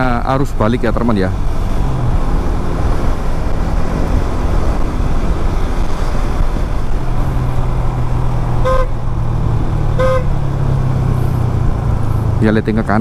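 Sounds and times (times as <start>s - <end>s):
wind rush: 1.3s - 12.4s
vehicle horn beeps: 8.6s - 9.0s, 10.0s - 10.4s.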